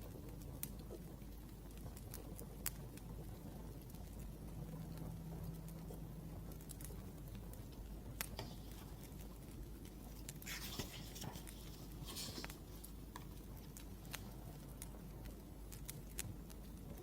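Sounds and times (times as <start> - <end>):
wood fire crackling: 0.0 - 17.0
scratchy rustles: 8.4 - 9.3, 10.0 - 13.8.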